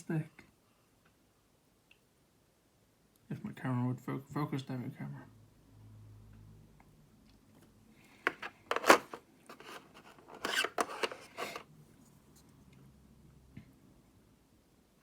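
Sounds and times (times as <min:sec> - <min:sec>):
packaging rustling and scraping: 0:08.3 - 0:11.7.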